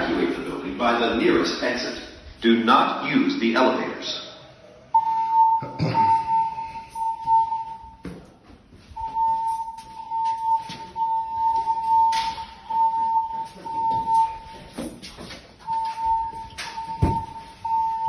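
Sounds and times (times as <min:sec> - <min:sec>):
pulsing high alarm tone: 0:04.9 - 0:08.0, 0:09.0 - 0:14.8, 0:15.6 - 0:18.0.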